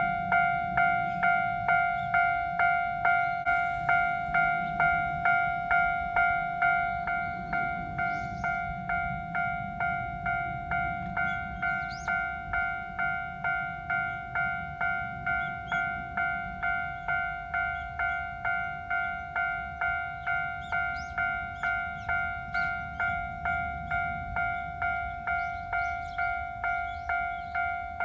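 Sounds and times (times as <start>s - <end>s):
railroad crossing bell ringing: 0.0s - 28.0s.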